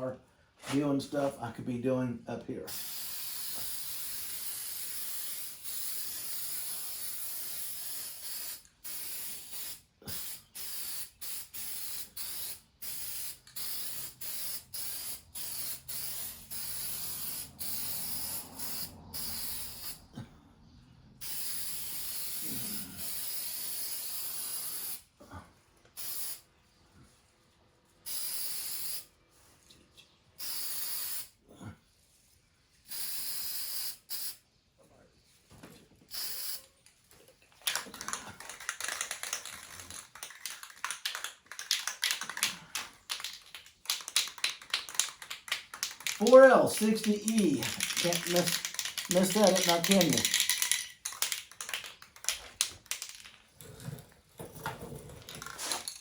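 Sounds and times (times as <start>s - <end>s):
aerosol spray hissing: 2.7s - 20.0s, 45.8s - 50.7s.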